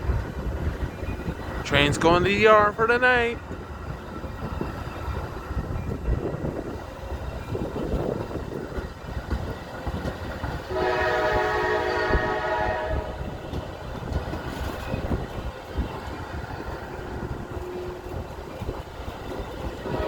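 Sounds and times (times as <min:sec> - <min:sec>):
low rumble of train: 0:00.0 - 0:20.0
locomotive air horn blast: 0:10.7 - 0:13.4.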